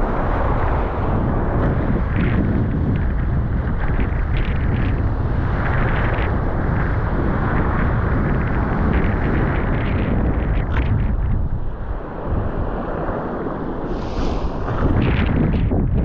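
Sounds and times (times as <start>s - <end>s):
wind buffeting microphone: 0.0s - 16.0s
bursts of hiss: 13.9s - 15.2s.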